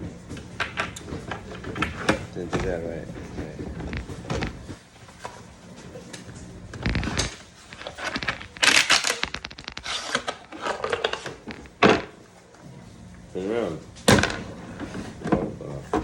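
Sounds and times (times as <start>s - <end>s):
rifle cartridges clicking and rattling: 6.8s - 11.7s.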